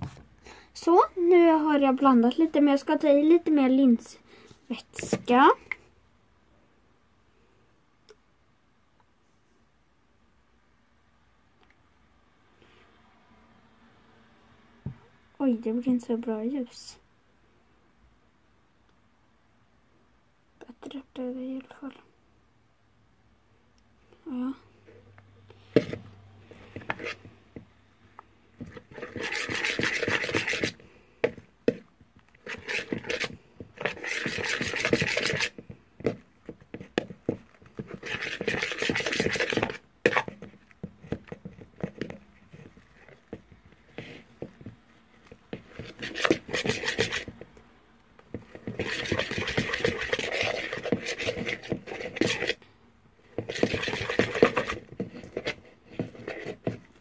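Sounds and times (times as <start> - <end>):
slime stirred in a bowl: 4.7 - 5.9, 25.5 - 52.6, 53.2 - 57.0.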